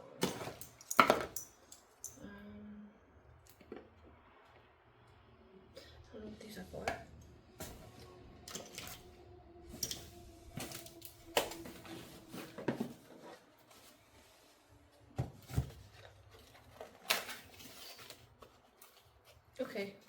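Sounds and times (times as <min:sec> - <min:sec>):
packaging clicks and rustles: 0:15.6 - 0:19.6.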